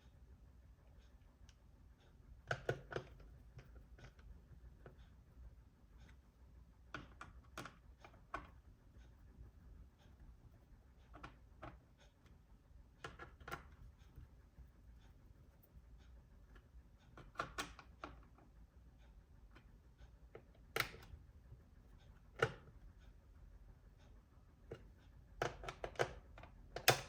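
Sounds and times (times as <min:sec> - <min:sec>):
clicks and taps on a laptop: 0:02.4 - 0:05.0, 0:24.7 - 0:27.0.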